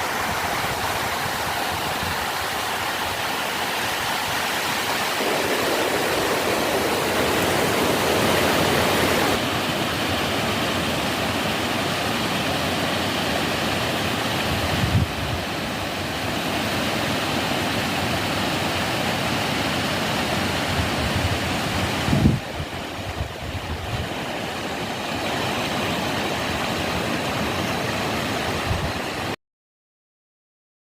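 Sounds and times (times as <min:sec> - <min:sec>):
waterfall pouring: 0:00.0 - 0:23.0.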